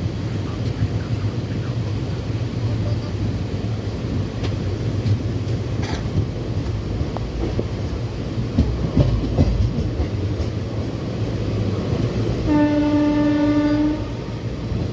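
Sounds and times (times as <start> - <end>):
train rumble: 0.0 - 14.9
train horn blast: 12.4 - 14.3.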